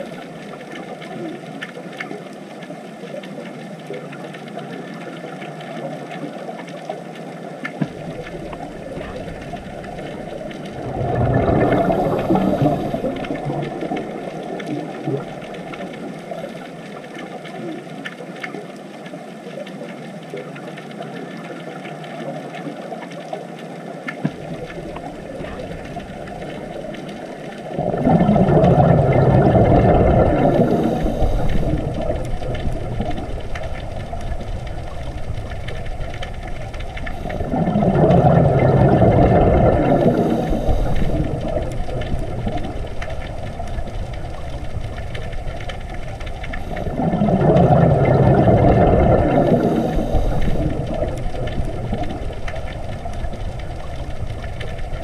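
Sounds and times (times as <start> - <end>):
exhaled bubbles underwater: 0.0 - 55.0
steady low rumble: 7.9 - 16.4, 24.4 - 55.0.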